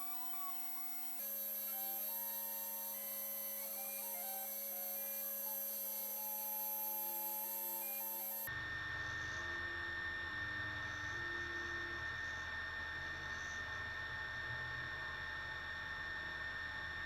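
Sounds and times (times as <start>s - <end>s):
stepper motors whining: 0.0s - 8.5s
cnc machine running: 0.0s - 12.4s.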